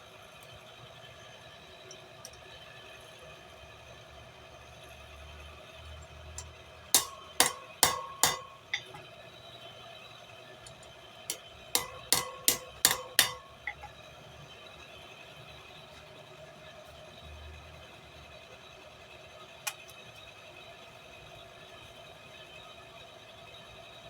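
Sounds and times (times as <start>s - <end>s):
light hammer taps: 7.0s - 9.0s, 11.8s - 13.9s
hammer striking steel: 7.0s - 9.1s, 11.3s - 13.9s.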